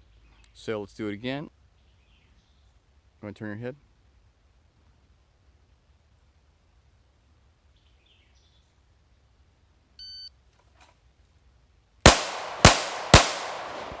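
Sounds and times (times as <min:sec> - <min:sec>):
pistol shots: 0:12.1 - 0:14.0.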